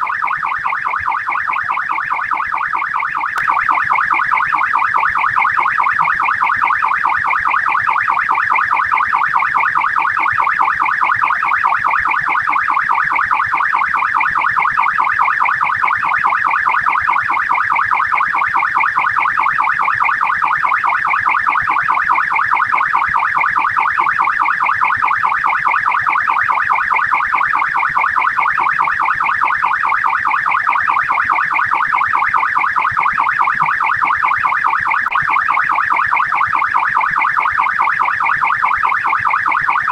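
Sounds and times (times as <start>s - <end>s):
police siren fast yelp: 0.0s - 39.9s.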